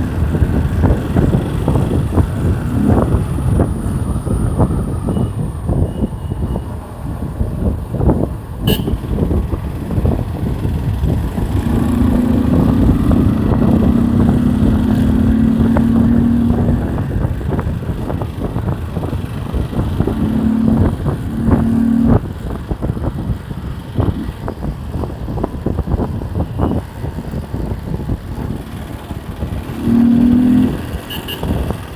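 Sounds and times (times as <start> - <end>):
motorcycle engine revving: 0.0 - 5.9, 8.7 - 31.9.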